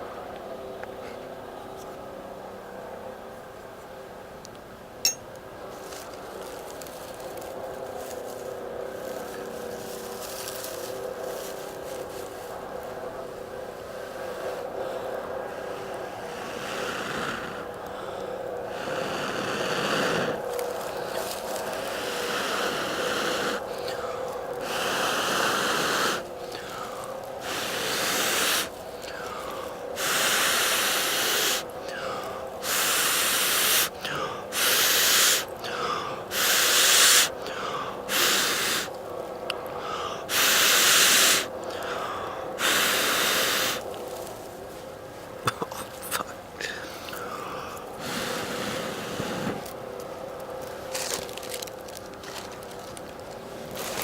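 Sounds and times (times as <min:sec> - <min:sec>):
tinder crackling: 0:05.7 - 0:40.5, 0:41.2 - 0:54.0
person blowing into tinder: 0:24.6 - 0:26.8, 0:27.4 - 0:28.8, 0:30.0 - 0:37.4, 0:38.0 - 0:38.9, 0:40.3 - 0:41.5, 0:42.6 - 0:43.8.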